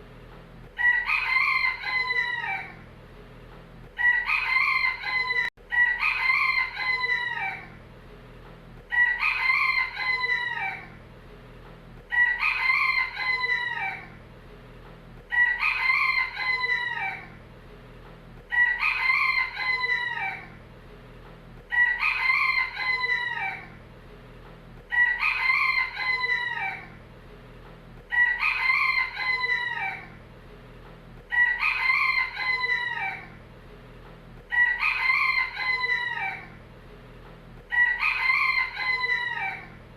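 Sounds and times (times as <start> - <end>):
rooster crowing: 0.8 - 2.8, 4.0 - 7.8, 8.9 - 11.0, 12.1 - 14.2, 15.3 - 17.4, 18.5 - 20.6, 21.7 - 23.8, 24.9 - 27.0, 28.1 - 30.2, 31.3 - 33.4, 34.5 - 36.6, 37.7 - 39.8.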